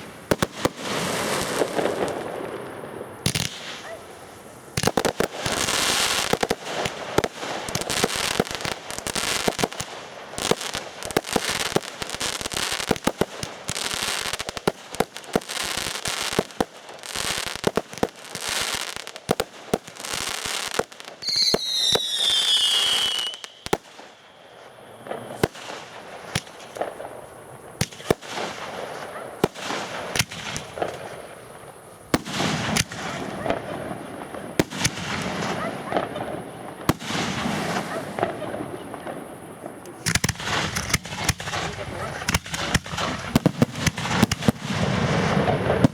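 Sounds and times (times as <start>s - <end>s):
falling firework whistles: 0.0s - 45.9s
fireworks bangs and crackling: 0.0s - 45.9s.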